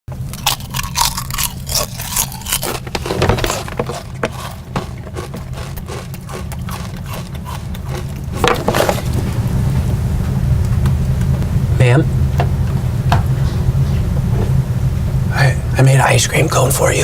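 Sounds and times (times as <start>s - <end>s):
steady low hum: 0.1s - 17.0s
person crunching food: 0.2s - 9.3s.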